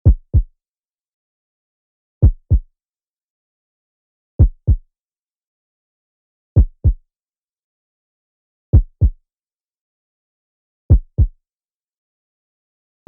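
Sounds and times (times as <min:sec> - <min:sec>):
heartbeat thumps: 0:00.0 - 0:00.5, 0:02.2 - 0:02.6, 0:04.4 - 0:04.8, 0:06.6 - 0:07.0, 0:08.8 - 0:09.2, 0:10.9 - 0:11.3.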